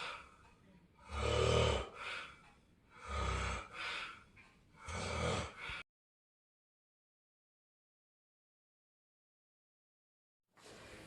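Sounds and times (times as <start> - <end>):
person snoring: 1.0 - 2.0, 3.0 - 3.8, 4.8 - 5.8.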